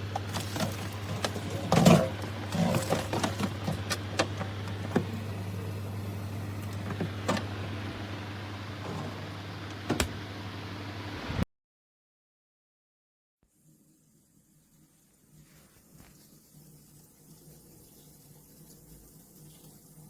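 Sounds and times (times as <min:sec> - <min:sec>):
steady low hum: 0:00.0 - 0:11.4.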